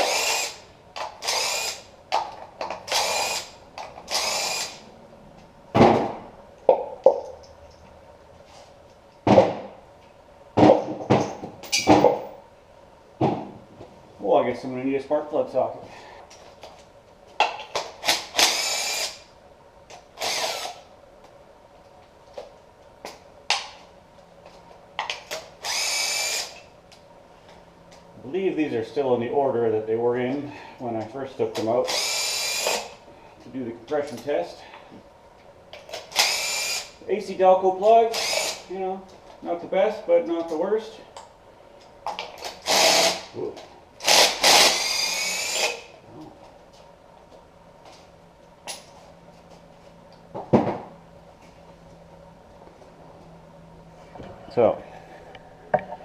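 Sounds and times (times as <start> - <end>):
cordless power tool whirring: 2.9 - 4.8, 20.2 - 20.8, 25.6 - 26.6, 42.6 - 43.3, 44.0 - 45.9.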